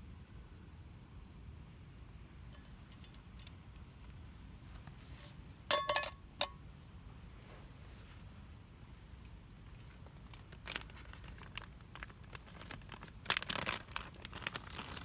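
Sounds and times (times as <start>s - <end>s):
metal cooking gear clinking: 5.7s - 6.6s.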